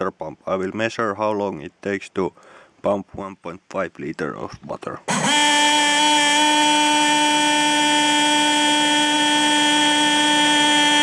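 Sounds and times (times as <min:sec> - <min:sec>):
electric water pump whining: 0:05.1 - 0:11.0.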